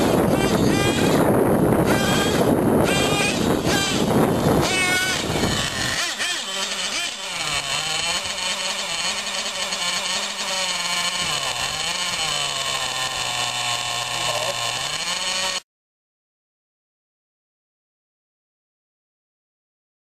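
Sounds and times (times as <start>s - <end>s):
rc truck motor whining: 0.0s - 15.6s.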